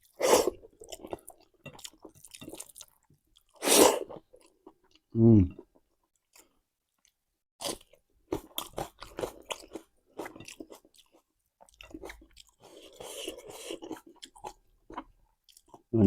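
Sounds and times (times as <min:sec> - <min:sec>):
person chewing crunchy food: 0:00.0 - 0:15.9.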